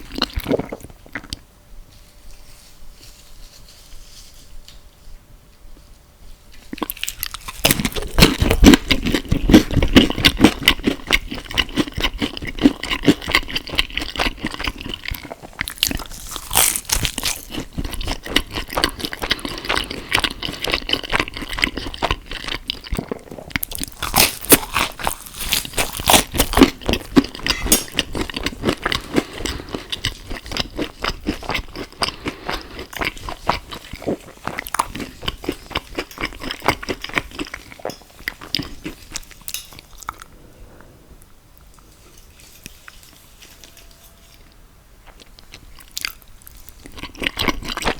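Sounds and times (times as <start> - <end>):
wet chewing and smacking: 6.7 - 40.3, 45.0 - 47.9
crunchy bites: 6.8 - 37.5.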